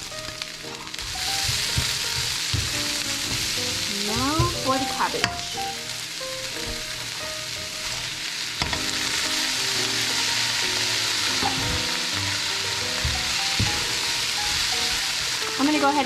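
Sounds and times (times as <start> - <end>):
food sizzling in frying pan: 0.0 - 16.0
utensil knocking against pan: 1.3 - 3.5, 4.1 - 5.4.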